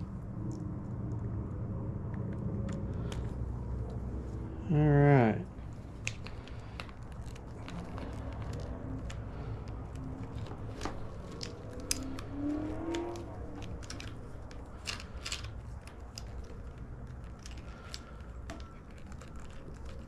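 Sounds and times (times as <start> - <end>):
steady low hum: 0.0 - 20.0
plastic connectors clicking and rattling: 5.7 - 20.0.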